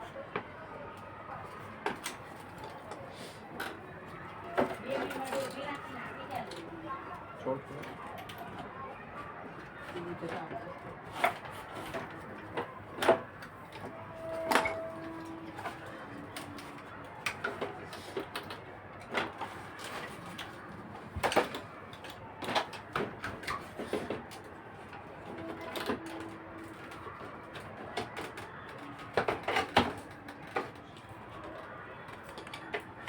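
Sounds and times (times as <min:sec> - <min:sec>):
objects knocking and clattering: 0:10.0 - 0:33.0.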